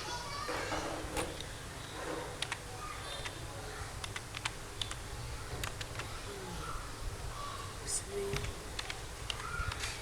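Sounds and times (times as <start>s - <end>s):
typing on a keyboard: 2.4s - 2.6s, 4.0s - 5.0s, 8.4s - 9.8s.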